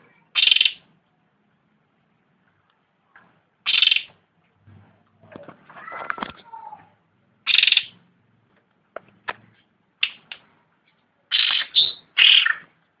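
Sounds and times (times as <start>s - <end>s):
sharp bird chips: 0.4s - 0.8s, 3.7s - 4.1s, 7.5s - 8.0s, 11.3s - 12.7s
songbird calling: 7.5s - 8.0s, 11.3s - 12.7s.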